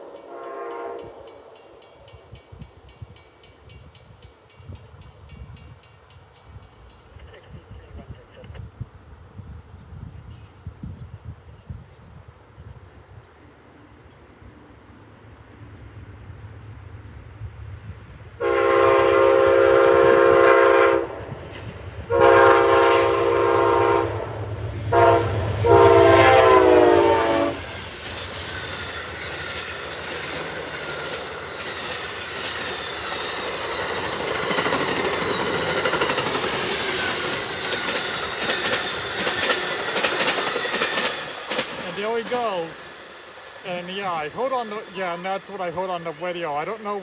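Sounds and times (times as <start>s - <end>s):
train chime horn: 0.0s - 1.8s, 18.4s - 21.1s, 22.1s - 24.3s, 24.9s - 39.8s
train wheels clickety-clack: 0.0s - 8.9s, 21.3s - 47.0s.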